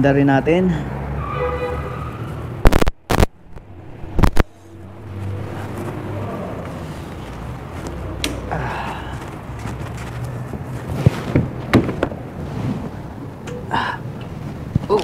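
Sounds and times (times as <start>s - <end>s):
steady low hum: 2.9s - 14.8s
loud sharp knocks: 11.3s - 12.2s.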